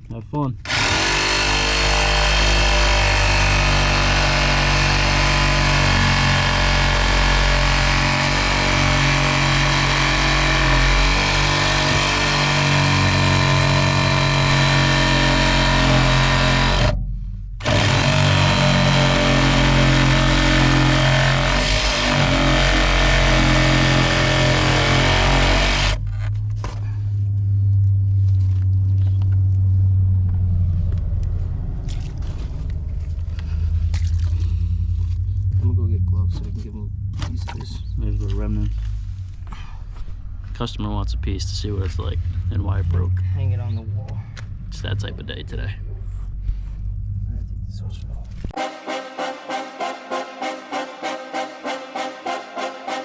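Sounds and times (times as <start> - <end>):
machine running loudly: 0.6 - 17.0, 17.6 - 26.0, 48.6 - 53.0.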